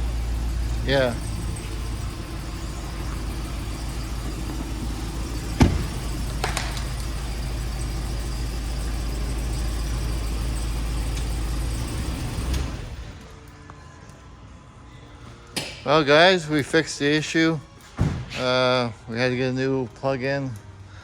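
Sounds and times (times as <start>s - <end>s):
truck engine running: 0.0s - 13.6s.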